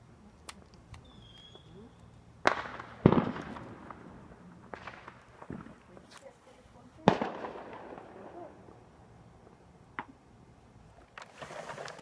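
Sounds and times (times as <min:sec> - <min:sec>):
firework bangs: 0:02.4 - 0:06.0, 0:07.0 - 0:08.9.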